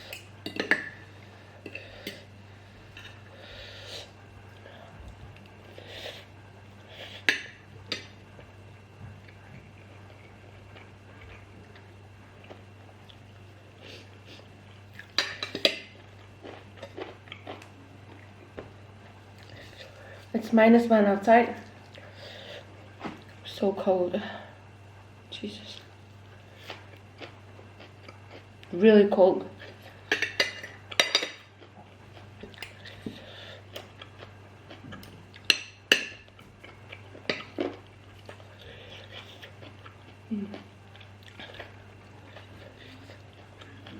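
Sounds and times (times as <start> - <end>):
utensils clinking against a plate: 0.1 - 1.0, 15.1 - 15.9, 30.0 - 31.5.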